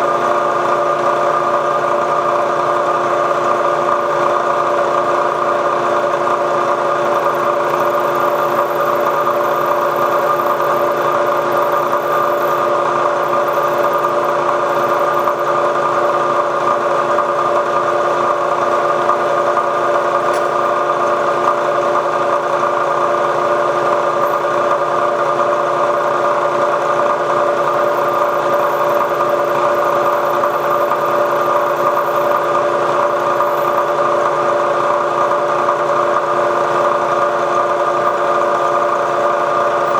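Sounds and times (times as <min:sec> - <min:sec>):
milling machine cutting metal: 0:06.8 - 0:17.0, 0:24.0 - 0:25.2, 0:26.1 - 0:35.6.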